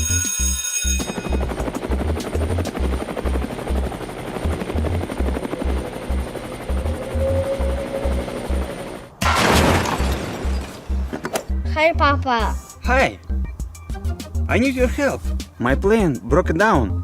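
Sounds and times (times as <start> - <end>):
helicopter rotor chopping: 0.8 - 9.2
music with bass beat: 11.6 - 16.3.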